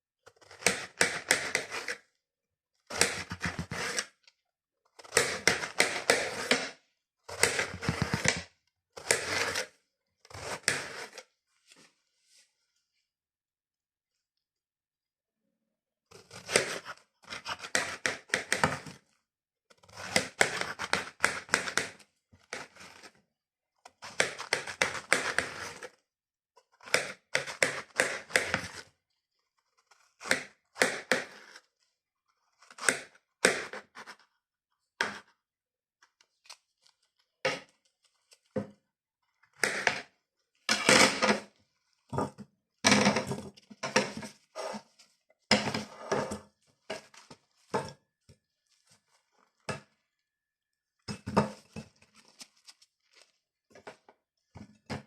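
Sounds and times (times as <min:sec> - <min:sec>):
knife cutting watermelon: 0:00.4 - 0:02.0, 0:02.9 - 0:04.2, 0:05.0 - 0:06.7, 0:07.3 - 0:08.4, 0:09.0 - 0:11.2, 0:16.3 - 0:19.0, 0:19.8 - 0:23.1, 0:24.0 - 0:26.0, 0:26.8 - 0:28.9.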